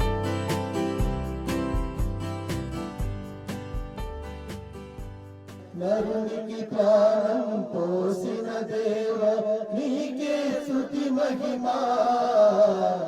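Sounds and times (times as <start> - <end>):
voices chanting: 5.8 - 13.0.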